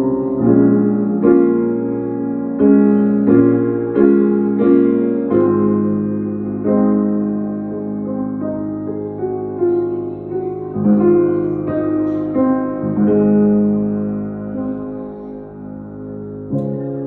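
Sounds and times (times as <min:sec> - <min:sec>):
slow piano music: 0:00.0 - 0:17.0.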